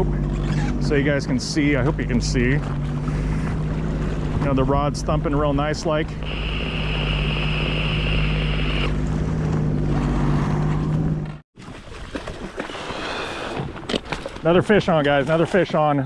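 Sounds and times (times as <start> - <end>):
high engine whine: 0.0 - 11.4
watercraft engine humming: 0.0 - 11.4
wind and water noise: 0.0 - 16.0.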